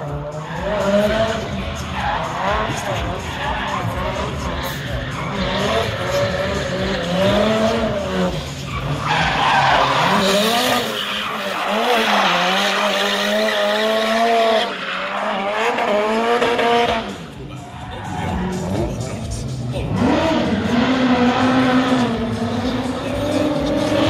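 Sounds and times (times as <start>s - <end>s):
car engine revving high: 0.0s - 24.0s
tyres squealing: 1.7s - 13.9s.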